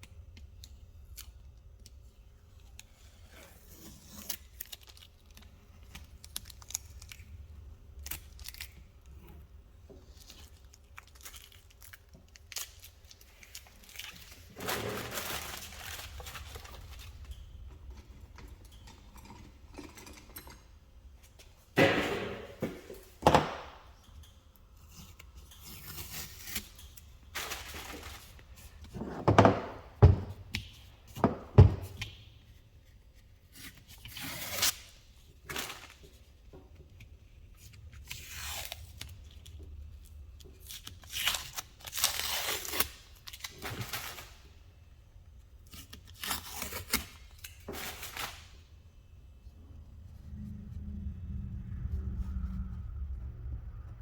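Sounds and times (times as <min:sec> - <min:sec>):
tearing and crumpling tape and paper: 0:00.0 - 0:17.7, 0:24.8 - 0:29.0, 0:32.1 - 0:48.8
sharp thunks: 0:21.8 - 0:23.8.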